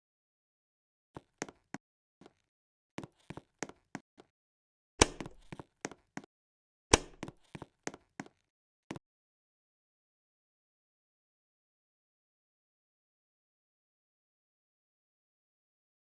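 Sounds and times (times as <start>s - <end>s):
sharp clicks and knocks: 5.0s - 5.6s, 6.9s - 7.3s.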